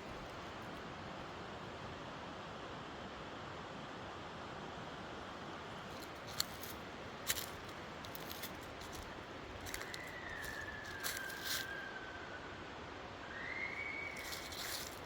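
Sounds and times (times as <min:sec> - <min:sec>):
footsteps crunching twigs and leaves: 0:05.8 - 0:11.8, 0:14.1 - 0:15.0
thin falling whistle-like tone: 0:13.2 - 0:15.0.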